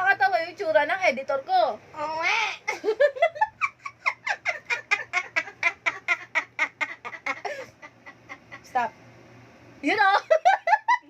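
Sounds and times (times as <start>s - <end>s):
person laughing hard: 2.7s - 8.6s.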